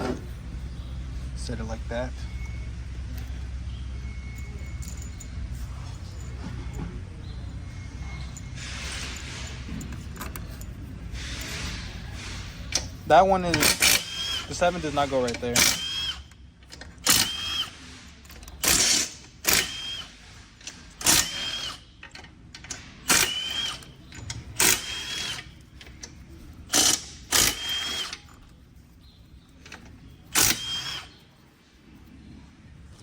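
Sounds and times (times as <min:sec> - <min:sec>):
cordless power driver whirring: 0:13.6 - 0:14.8, 0:15.6 - 0:16.3, 0:17.1 - 0:17.7, 0:18.7 - 0:20.1, 0:23.1 - 0:23.9, 0:24.6 - 0:25.5, 0:26.7 - 0:28.2, 0:30.3 - 0:31.2.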